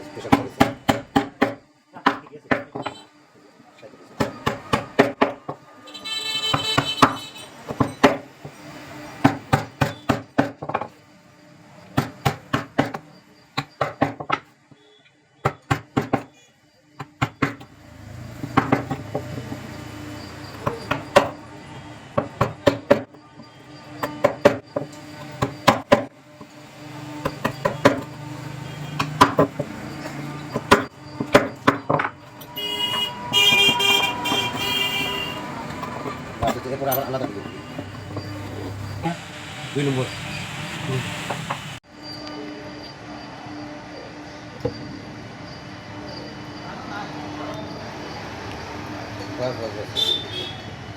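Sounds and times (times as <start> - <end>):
hammering on wood: 0.2 - 3.0, 4.2 - 5.6, 6.5 - 8.6, 9.2 - 10.9, 12.0 - 13.0, 13.6 - 14.5, 15.4 - 16.3, 17.0 - 17.7, 18.4 - 19.7, 20.5 - 21.4, 22.2 - 23.2, 24.0 - 26.1, 27.2 - 28.1, 28.8 - 32.2.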